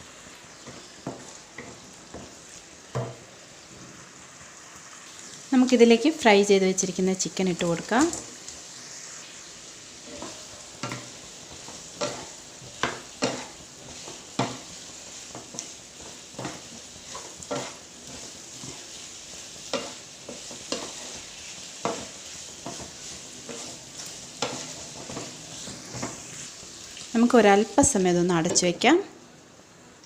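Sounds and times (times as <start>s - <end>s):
food sizzling in a pan: 0.0s - 30.0s
spoon knocking and scraping pan: 0.6s - 3.3s, 10.1s - 26.3s, 27.8s - 28.8s.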